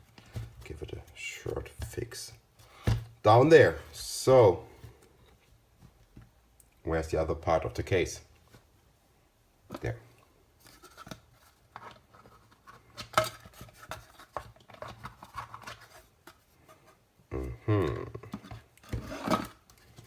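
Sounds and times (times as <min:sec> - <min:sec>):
plastic scraping and rubbing: 0:10.6 - 0:17.0, 0:18.2 - 0:20.0.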